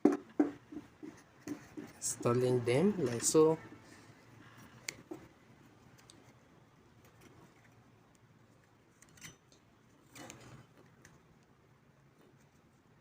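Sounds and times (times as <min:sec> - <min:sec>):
clicks and scrapes of parts handled: 0:07.0 - 0:11.2.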